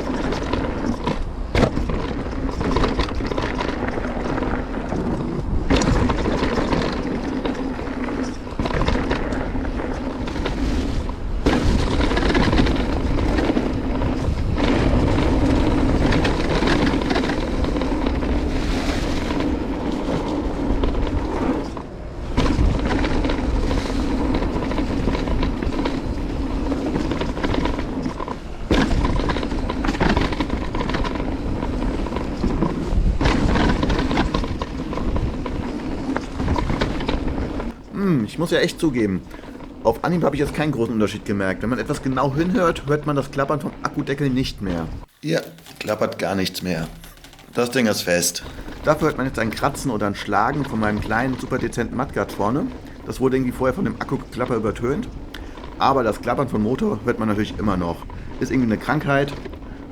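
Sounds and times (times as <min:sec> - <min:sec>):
bike knocking and clattering: 0:00.0 - 0:59.9
bike tyres on rough trail: 0:00.0 - 0:59.9
motor rattling: 0:00.0 - 0:59.9.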